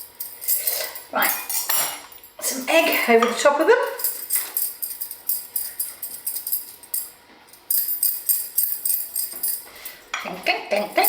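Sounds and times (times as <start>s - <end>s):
bracelets jingling: 3.8s - 9.8s.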